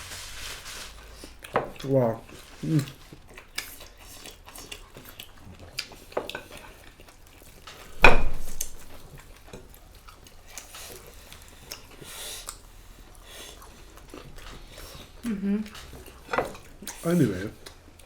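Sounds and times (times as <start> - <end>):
dishes and utensils clinking: 7.7 - 9.0
loud knock on table: 8.0 - 8.8.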